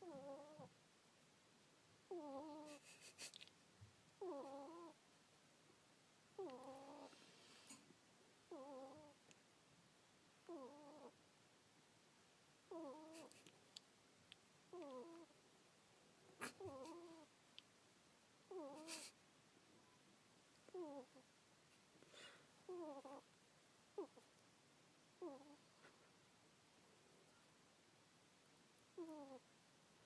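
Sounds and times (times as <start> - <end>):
ferret snoring: 0.0 - 0.7, 2.1 - 2.8, 4.2 - 5.0, 6.4 - 7.8, 8.5 - 9.2, 10.4 - 11.2, 12.7 - 13.4, 16.4 - 17.3, 18.5 - 19.2, 20.7 - 21.2, 22.2 - 23.2, 25.2 - 25.6, 29.0 - 29.4.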